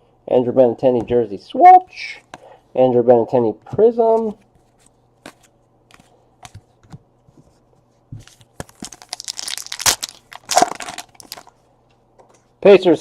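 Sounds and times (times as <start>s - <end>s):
wrapper tearing and crinkling: 8.7s - 11.5s.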